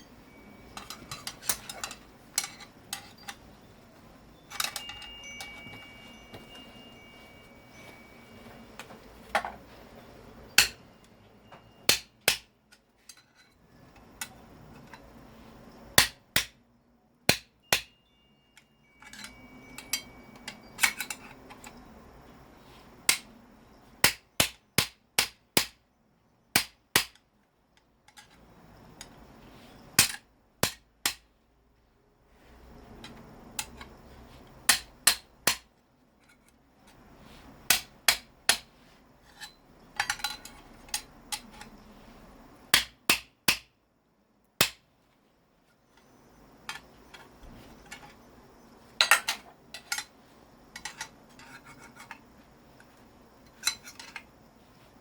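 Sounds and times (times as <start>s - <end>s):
hammer striking metal: 10.6s - 10.8s, 11.5s - 12.5s, 17.3s - 18.0s.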